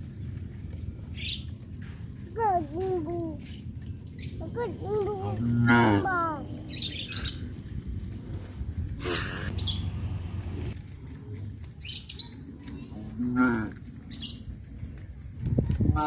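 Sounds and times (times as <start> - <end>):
small birds chirping: 0.2 - 16.0
cattle lowing: 9.0 - 10.7.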